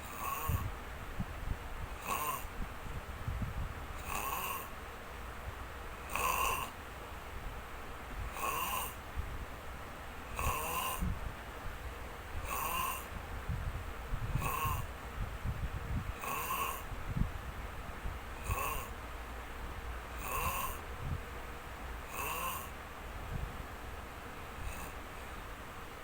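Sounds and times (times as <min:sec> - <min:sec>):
person snoring: 0:00.0 - 0:00.7, 0:02.0 - 0:02.5, 0:04.0 - 0:04.7, 0:06.1 - 0:06.7, 0:08.3 - 0:09.0, 0:10.4 - 0:11.1, 0:12.4 - 0:13.1, 0:14.4 - 0:14.9, 0:16.2 - 0:16.9, 0:18.4 - 0:18.9, 0:20.2 - 0:20.8, 0:22.1 - 0:22.7, 0:24.6 - 0:25.0.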